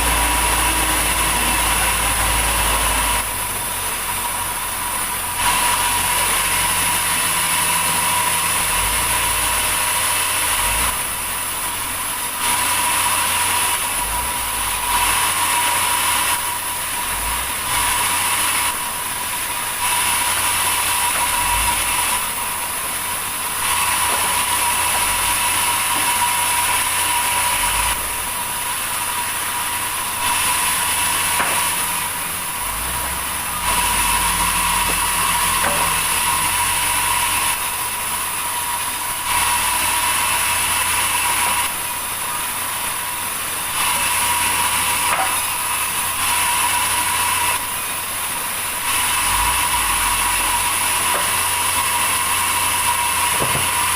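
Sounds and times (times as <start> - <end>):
sawmill machinery running: 0.0 - 53.9.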